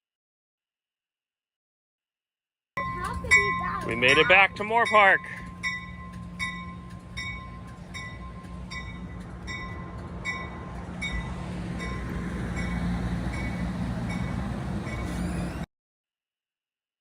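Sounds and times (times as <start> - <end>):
train bell ringing: 2.8 - 15.6.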